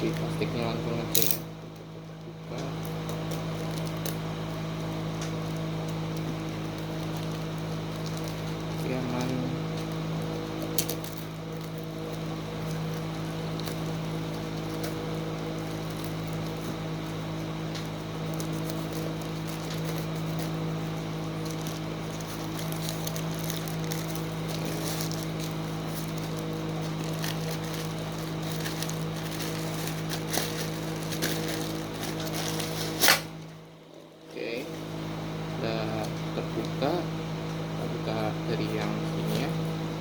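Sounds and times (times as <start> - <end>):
steady low hum: 0.0 - 40.0
plastic packaging crackling: 2.6 - 33.4.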